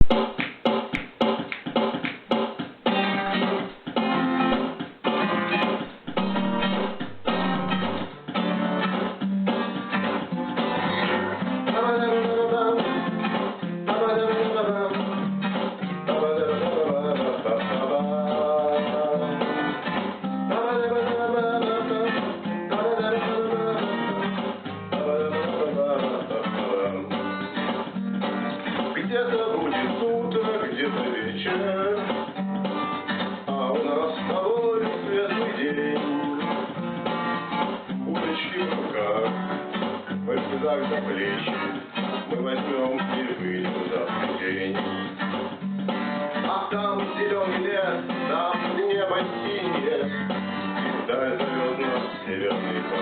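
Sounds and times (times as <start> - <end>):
guitar strumming chords: 0.0 - 53.0
held melody line: 3.0 - 8.9.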